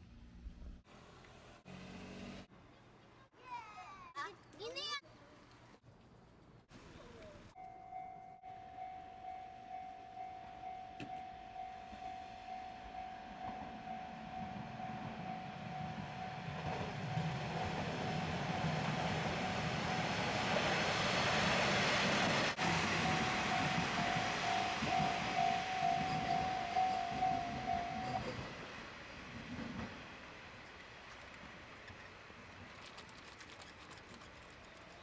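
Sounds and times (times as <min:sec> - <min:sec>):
diesel train engine rumble: 0:06.7 - 0:35.0
level crossing warning bell: 0:07.6 - 0:21.7, 0:22.5 - 0:28.6.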